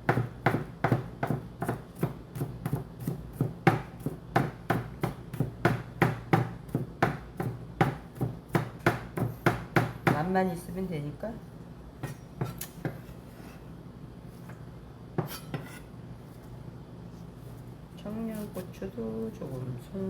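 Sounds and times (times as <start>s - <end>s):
knife chopping on cutting board: 0.0s - 10.3s.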